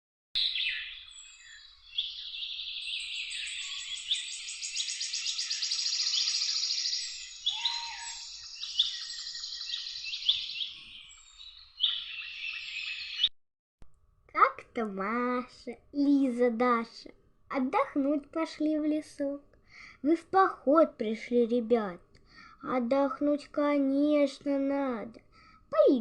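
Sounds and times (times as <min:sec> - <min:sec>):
songbirds chirping and trilling: 0:00.4 - 0:13.3.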